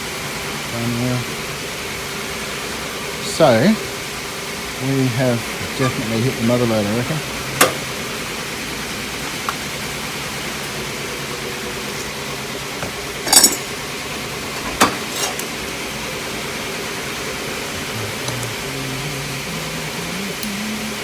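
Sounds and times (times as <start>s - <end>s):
steady background hiss: 0.0s - 21.0s
metal tooling clinking and knocking: 12.8s - 13.7s.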